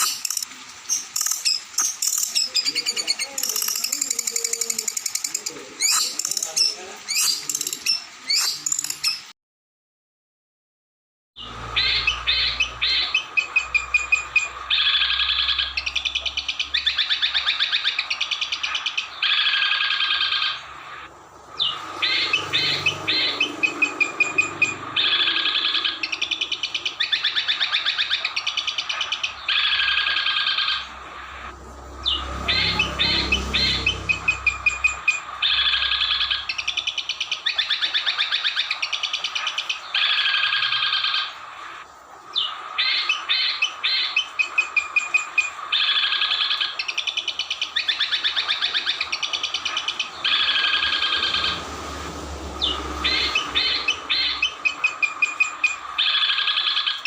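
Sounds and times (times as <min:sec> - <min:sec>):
songbird trills and chattering: 0:00.0 - 0:09.3, 0:21.6 - 0:30.9, 0:42.3 - 0:51.6, 0:52.6 - 0:57.0.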